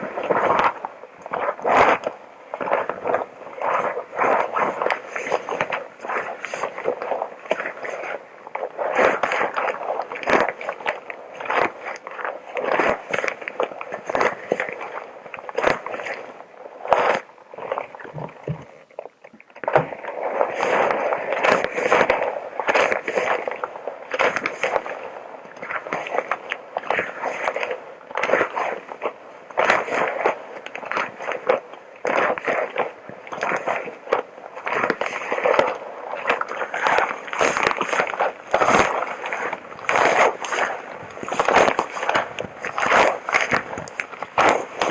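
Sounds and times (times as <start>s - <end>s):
crinkling and rubbing: 0.0s - 44.9s.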